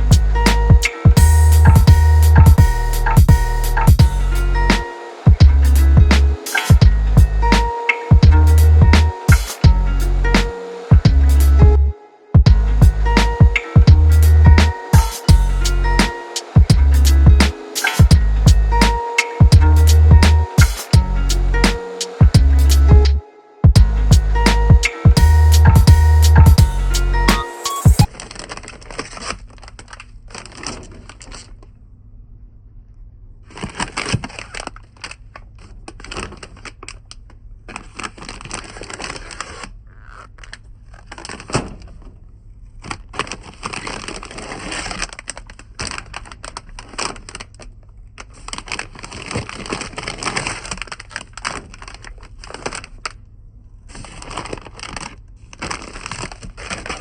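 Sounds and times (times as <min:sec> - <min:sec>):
steady low hum: 0:00.0 - 0:28.0
plastic packaging crinkling: 0:28.0 - 0:31.8, 0:33.4 - 0:57.0.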